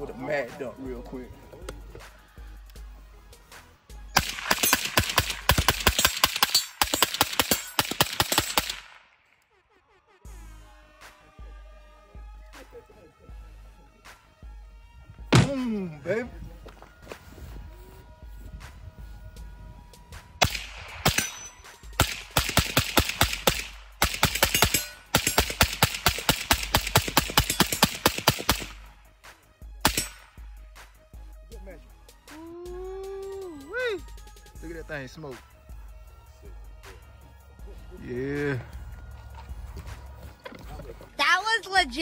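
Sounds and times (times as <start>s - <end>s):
rifle firing rapid shots: 4.2s - 9.0s, 20.4s - 28.9s, 29.8s - 30.3s
rapid gunshots: 4.2s - 9.1s, 20.4s - 29.0s, 29.8s - 30.4s.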